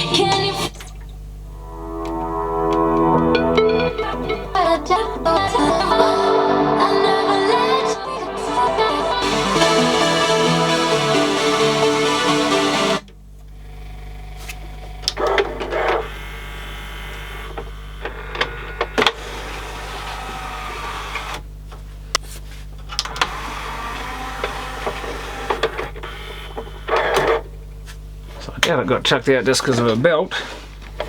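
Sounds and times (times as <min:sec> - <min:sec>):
steady low hum: 0:00.1 - 0:19.6
cd changer mechanism whirring: 0:14.4 - 0:21.6, 0:22.9 - 0:27.6.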